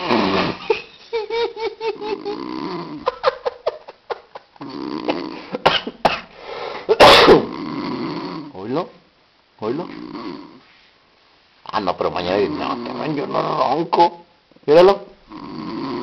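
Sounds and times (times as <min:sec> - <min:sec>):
man snoring: 0:00.0 - 0:00.7, 0:02.1 - 0:03.1, 0:04.6 - 0:05.6, 0:07.4 - 0:08.5, 0:09.8 - 0:10.6, 0:12.3 - 0:13.4, 0:15.2 - 0:16.0.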